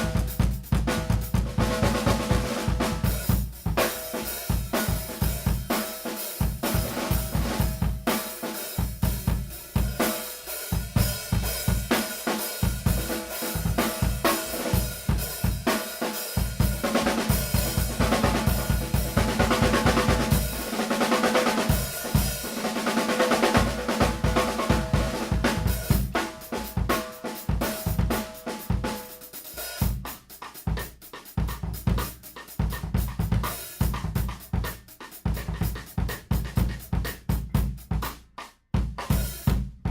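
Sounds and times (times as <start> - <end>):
bass drum: 0.0 - 5.8, 6.4 - 8.1, 12.6 - 15.7, 16.4 - 22.6, 23.2 - 29.1, 29.8 - 39.9
cymbals: 0.0 - 30.2
snare drum: 0.0 - 39.9.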